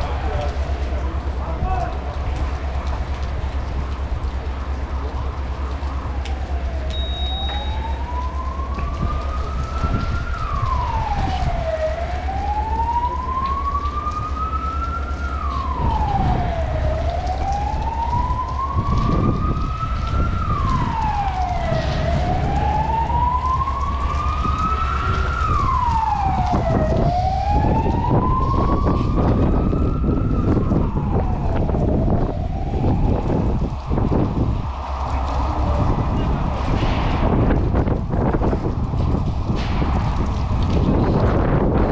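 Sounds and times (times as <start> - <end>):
low rumble: 0.0 - 41.9
siren wailing: 4.0 - 36.8.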